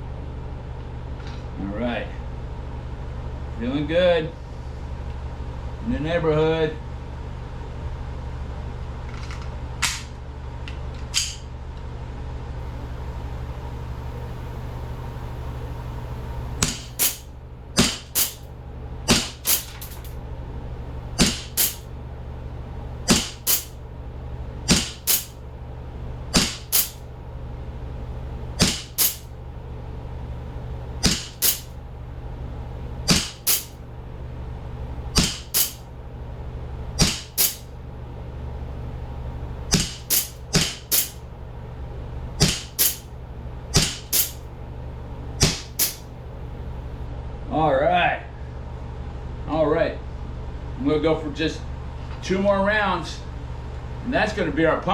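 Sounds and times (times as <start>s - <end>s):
steady low hum: 12.6s - 47.2s
air pistol shots: 15.6s - 18.5s, 19.1s - 20.2s, 21.2s - 21.9s, 23.1s - 23.8s, 24.7s - 25.4s, 26.3s - 27.0s, 28.6s - 29.3s, 31.0s - 31.8s, 33.1s - 33.8s, 35.1s - 35.9s, 37.0s - 37.7s, 39.7s - 41.2s, 42.4s - 43.1s, 43.7s - 44.5s, 45.4s - 47.0s.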